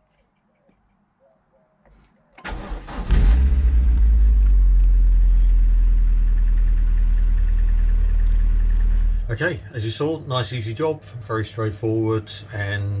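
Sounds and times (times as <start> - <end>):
car engine idling: 2.4 - 9.4.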